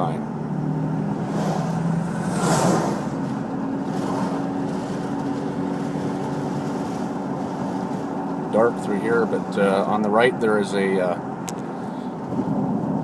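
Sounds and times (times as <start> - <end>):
car engine hum: 0.0 - 13.0
road noise inside car: 0.0 - 13.0
brief whoosh: 1.2 - 3.3.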